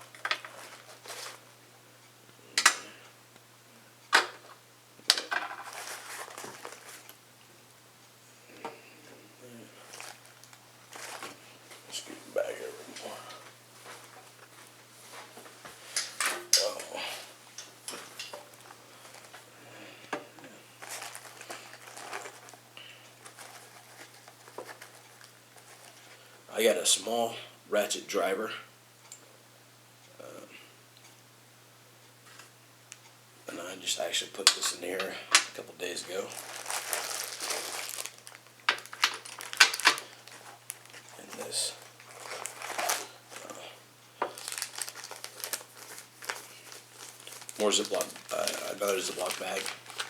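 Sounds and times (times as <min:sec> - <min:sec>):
tool pouch rustling: 0:00.0 - 0:01.5, 0:05.5 - 0:07.1, 0:09.8 - 0:11.9, 0:17.9 - 0:19.5, 0:20.8 - 0:26.1, 0:35.4 - 0:43.6, 0:44.2 - 0:50.0.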